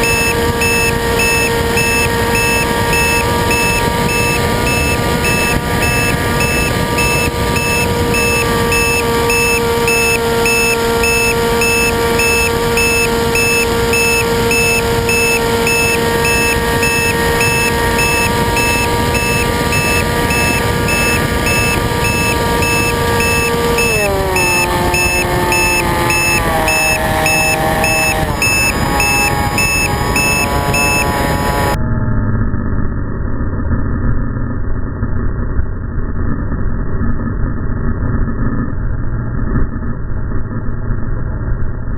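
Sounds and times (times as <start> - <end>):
model plane motor whining: 0.0 - 31.8.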